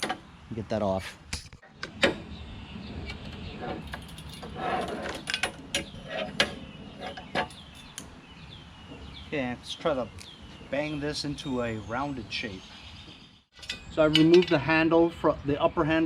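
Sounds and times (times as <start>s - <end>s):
metal parts clanking and ringing: 13.6s - 14.7s.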